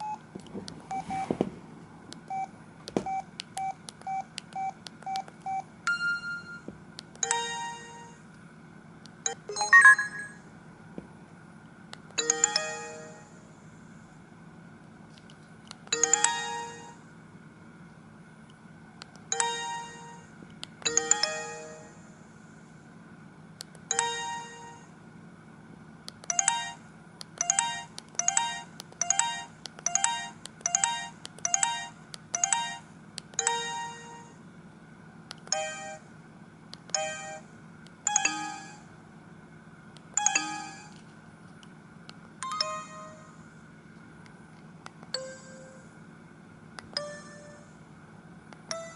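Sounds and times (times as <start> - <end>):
faint steady hum: 0.0 - 48.9
phone ringtone chiming melody: 9.3 - 10.4, 12.2 - 13.2, 16.0 - 17.0, 20.9 - 22.0, 38.1 - 38.8, 42.4 - 43.3.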